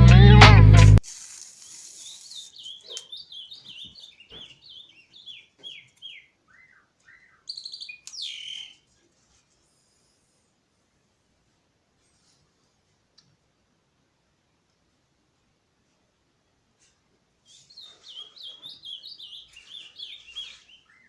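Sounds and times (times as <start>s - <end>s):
music with singing: 0.0s - 1.0s
small bird chirping: 1.2s - 9.0s, 16.8s - 21.0s.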